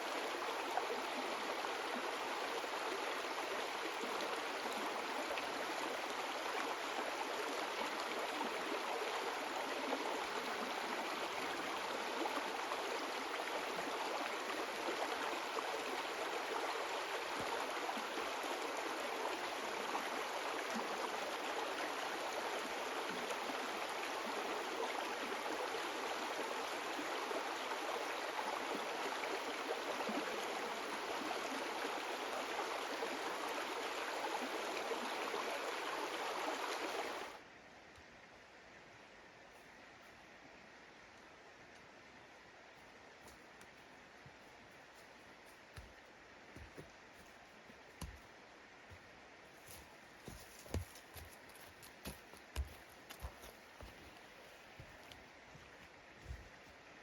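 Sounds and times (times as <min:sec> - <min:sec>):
river water rushing: 0:00.0 - 0:37.4.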